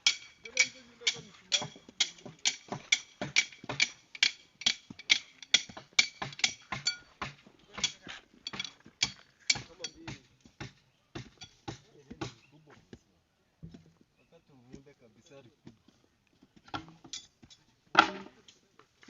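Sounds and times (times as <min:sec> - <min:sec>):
metal tool striking hard ground: 0:00.0 - 0:12.5, 0:16.7 - 0:18.4.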